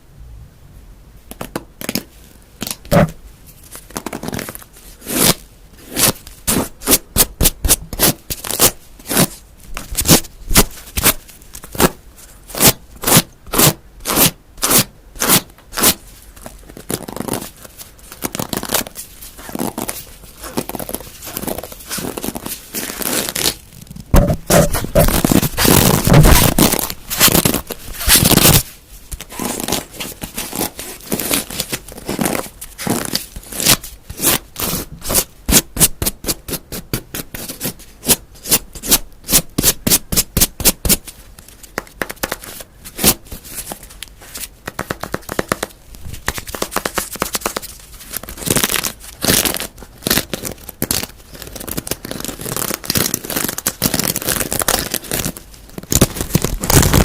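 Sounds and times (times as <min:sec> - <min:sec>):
object being scratched: 0:02.9 - 0:03.2, 0:18.5 - 0:36.5
object being tapped: 0:24.2 - 0:24.7.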